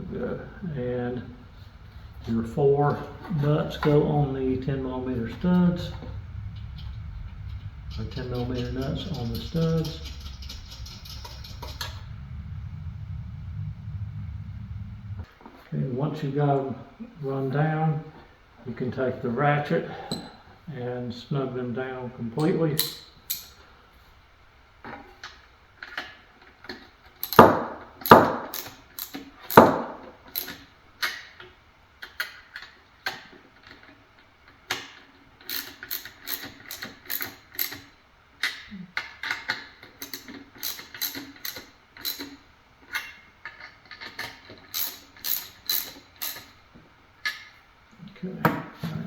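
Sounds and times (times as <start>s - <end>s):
hand ratchet clicking: 27.2s - 31.2s, 34.7s - 38.6s, 39.2s - 46.6s.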